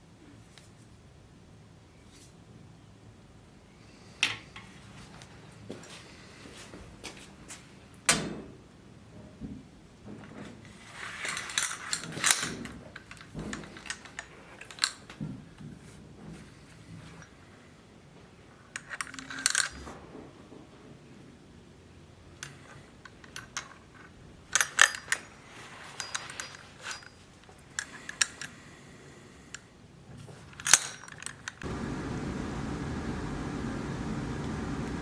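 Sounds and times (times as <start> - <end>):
metallic clinks and knocks: 22.4 - 28.6
rattling clinks: 24.6 - 28.6.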